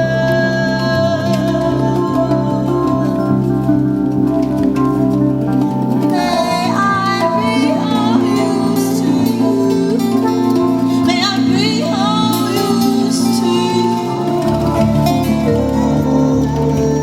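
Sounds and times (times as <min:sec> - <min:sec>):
guitar chords: 0:00.0 - 0:17.0
live band music: 0:00.0 - 0:17.0
sustained bass: 0:00.0 - 0:17.0
wordless singing: 0:00.0 - 0:17.0.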